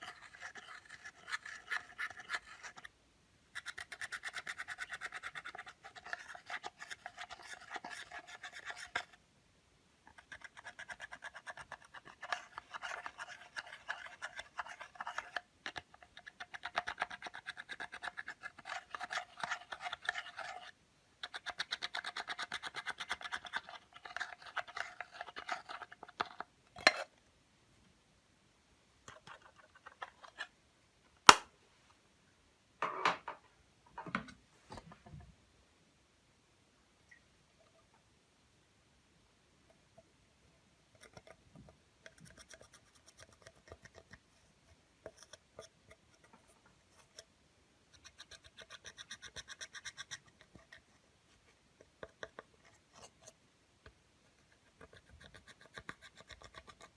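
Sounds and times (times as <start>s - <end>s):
sharp snap: 31.3s - 31.5s.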